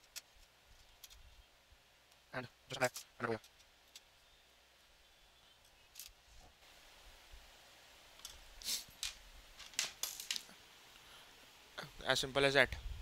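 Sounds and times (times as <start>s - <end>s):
metal hardware clicking and clinking: 0.0s - 1.2s, 2.7s - 4.1s, 5.6s - 6.2s, 9.0s - 10.5s.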